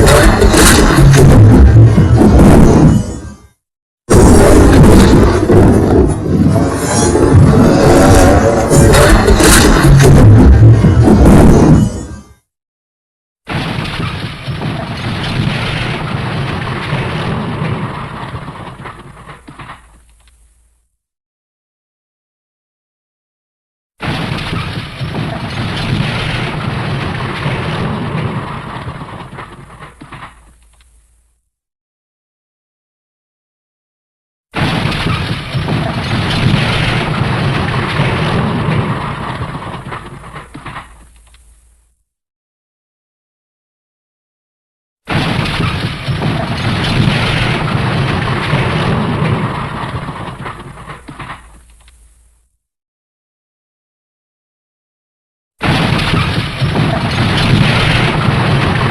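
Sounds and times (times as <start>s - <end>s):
crashing rumbling smash: 0.0s - 3.3s, 4.1s - 12.0s, 13.5s - 19.9s, 24.0s - 30.5s, 34.6s - 41.1s, 45.1s - 51.7s, 55.6s - 58.9s
heavy rumble: 0.0s - 3.3s, 4.1s - 12.0s
cartoon crash boom: 0.0s - 3.4s, 4.1s - 12.3s
crackling debris: 4.1s - 12.1s, 13.5s - 20.7s, 24.0s - 31.3s, 34.6s - 42.0s, 45.1s - 52.6s, 55.6s - 58.9s.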